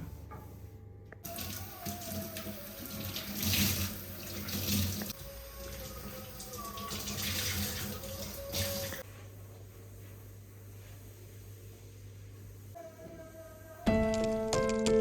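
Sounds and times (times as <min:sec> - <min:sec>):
tap water running into sink: 0:01.2 - 0:09.0.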